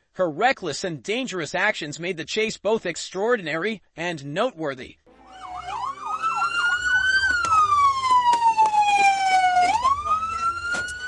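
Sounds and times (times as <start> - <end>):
police siren: 5.1 - 11.0.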